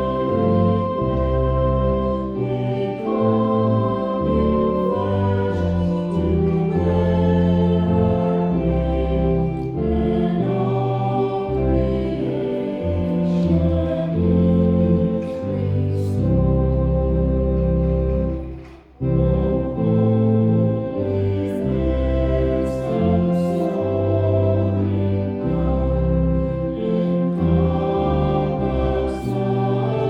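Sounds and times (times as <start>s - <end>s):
sustained organ chords: 0.0s - 30.0s
voices singing a hymn: 0.0s - 30.0s.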